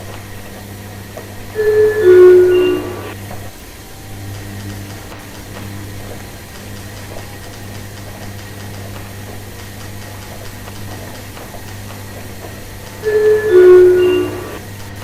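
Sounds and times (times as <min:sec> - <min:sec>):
faint ticking: 0:00.0 - 0:15.0
washing machine humming: 0:00.0 - 0:15.0
electronic chime: 0:01.6 - 0:08.6, 0:09.8 - 0:15.0.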